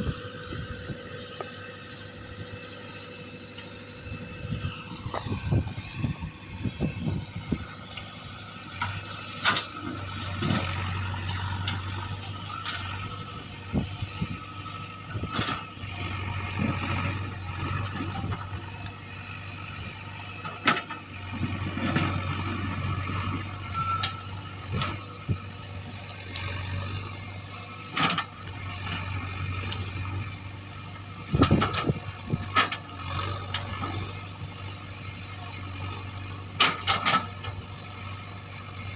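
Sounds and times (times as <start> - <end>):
backhoe diesel engine running: 0.0 - 38.9
sharp clanks and knocks: 36.6 - 37.6.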